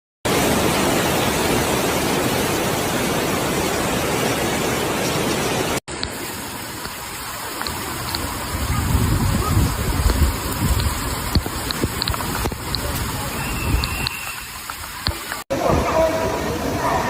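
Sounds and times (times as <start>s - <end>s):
heavy rain: 0.2s - 17.0s
rushing water: 0.2s - 17.0s
raindrop ticks: 5.9s - 15.4s.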